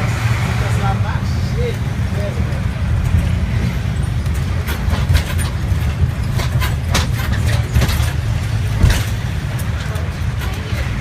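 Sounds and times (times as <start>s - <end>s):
vehicle low rumble: 0.0s - 11.0s
sharp knocks and rattles: 2.9s - 11.0s.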